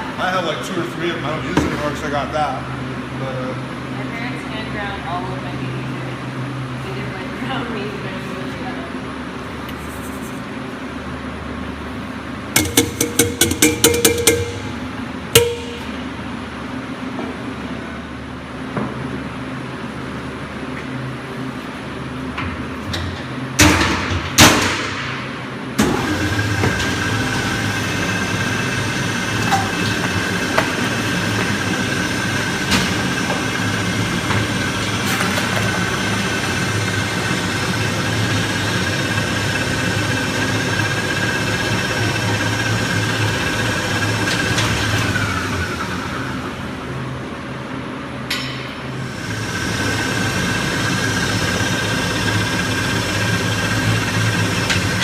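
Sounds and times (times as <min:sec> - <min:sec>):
sharp knocks: 0:12.6 - 0:14.8
meat grinder motor whining: 0:25.8 - 0:46.6, 0:49.1 - 0:55.0.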